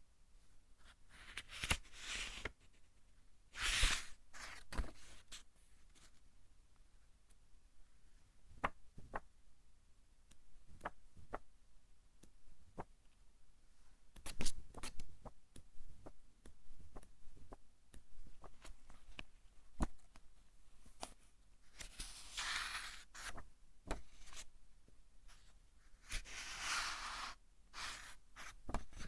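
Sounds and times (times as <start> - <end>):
book pages swishing: 21.8 - 24.0.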